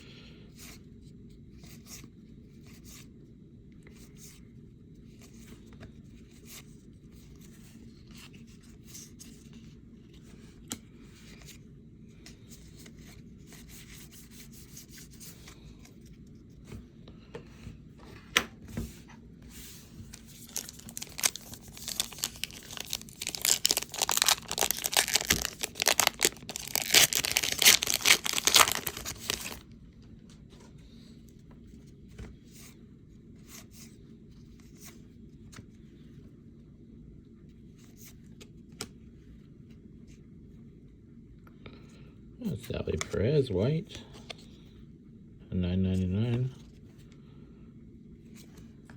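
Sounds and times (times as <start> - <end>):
wrapper tearing and crinkling: 20.1 - 29.6.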